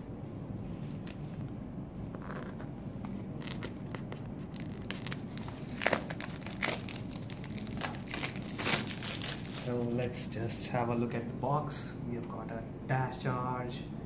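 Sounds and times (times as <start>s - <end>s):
packaging crinkling and tearing: 3.3s - 9.8s.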